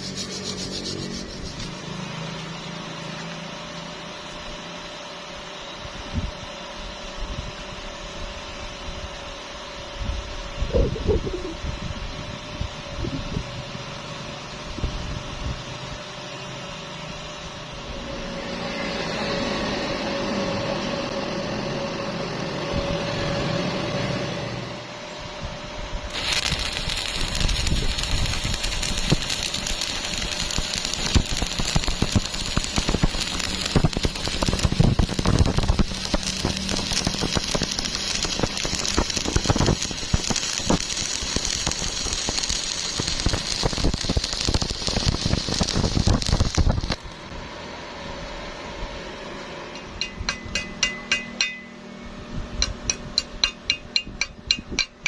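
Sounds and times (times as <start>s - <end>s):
welding arc crackling: 0.0s - 4.9s, 26.0s - 47.4s
steady motor hum: 0.0s - 55.0s.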